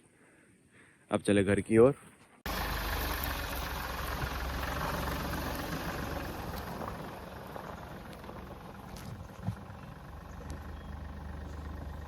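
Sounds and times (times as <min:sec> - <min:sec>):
car engine running: 0:02.5 - 0:12.0.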